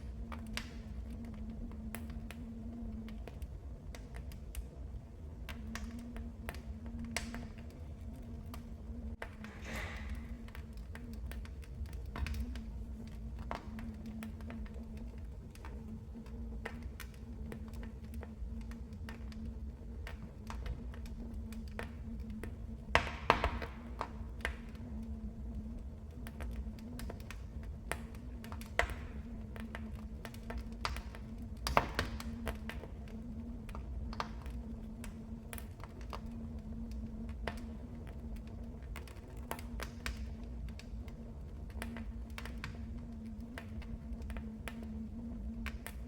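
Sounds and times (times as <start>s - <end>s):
low rumble: 0.0s - 15.9s
fire crackling in fireplace: 0.0s - 46.0s.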